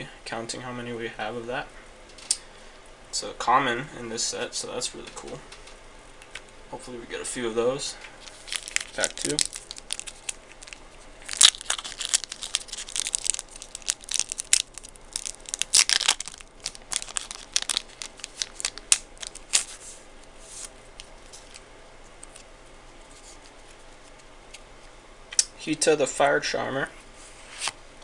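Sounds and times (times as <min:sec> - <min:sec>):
faint handling sounds: 0:07.6 - 0:25.0
foil wrapper tearing and crinkling: 0:08.2 - 0:19.8.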